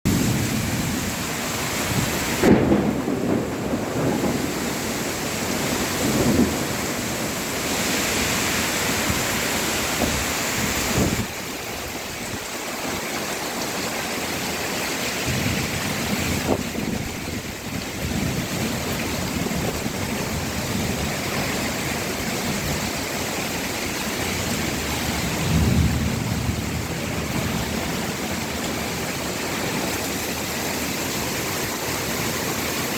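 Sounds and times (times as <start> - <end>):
thunder rumbles: 0.0 - 13.0, 15.2 - 31.8
heavy rain: 0.0 - 32.9.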